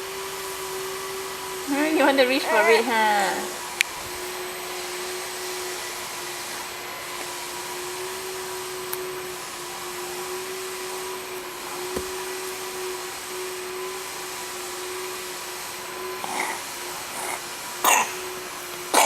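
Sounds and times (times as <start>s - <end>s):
motor hum: 8.2s - 14.1s
soft knock: 12.0s - 12.3s.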